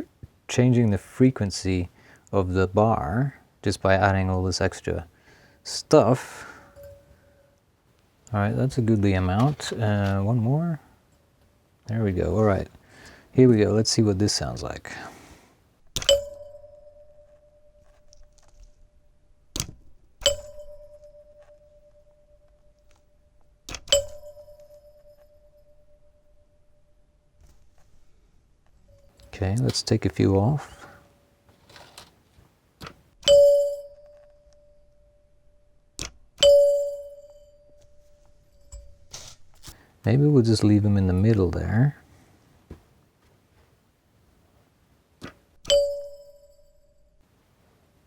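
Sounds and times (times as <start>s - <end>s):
door chime bar ringing: 16.0s - 27.1s, 33.2s - 39.2s, 45.6s - 47.2s.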